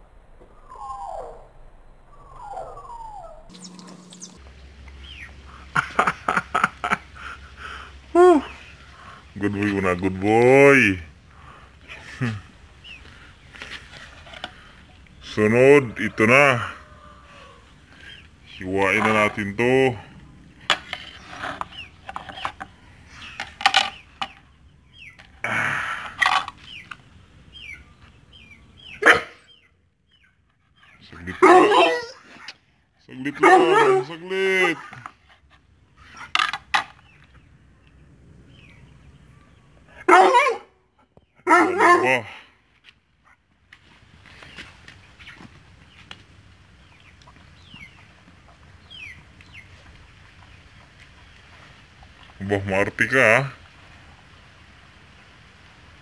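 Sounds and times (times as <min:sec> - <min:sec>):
faint high chirps: 0:00.0 - 0:05.4.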